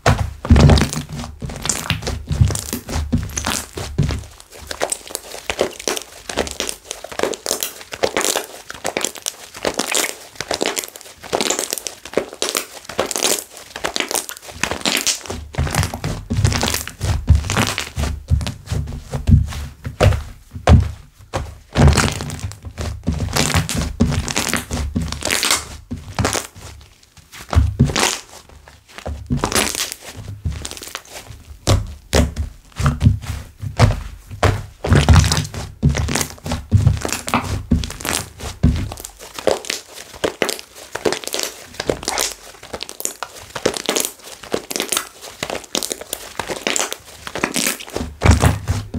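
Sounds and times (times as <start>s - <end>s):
slime crackling pops: 23.2s - 26.5s, 34.9s - 48.9s.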